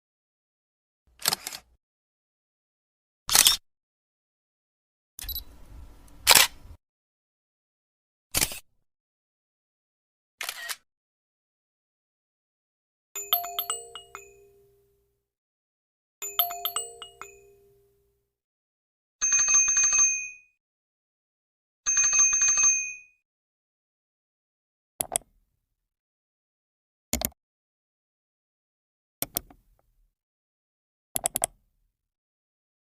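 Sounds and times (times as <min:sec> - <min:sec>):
bicycle bell trill: 0:13.2 - 0:14.6, 0:16.2 - 0:17.8, 0:21.9 - 0:23.2
wind chime jingle: 0:13.2 - 0:14.7, 0:16.2 - 0:17.8.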